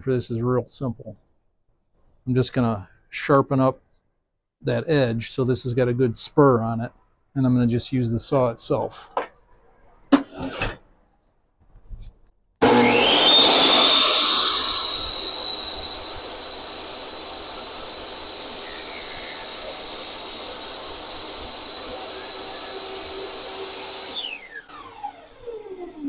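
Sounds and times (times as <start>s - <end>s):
table saw motor whine: 12.6s - 26.0s.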